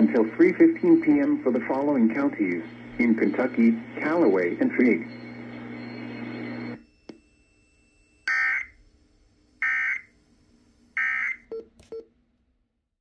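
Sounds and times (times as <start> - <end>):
two-tone digital squawks: 8.3 - 8.8.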